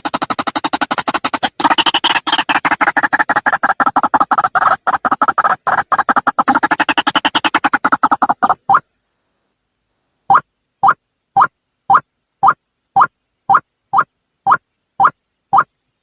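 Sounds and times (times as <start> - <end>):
waterhen calling harsh notes: 0.0 - 8.9.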